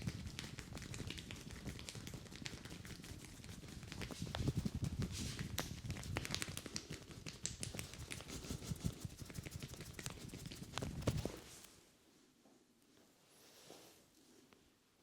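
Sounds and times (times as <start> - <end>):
pats and taps on head: 0.8 - 11.4.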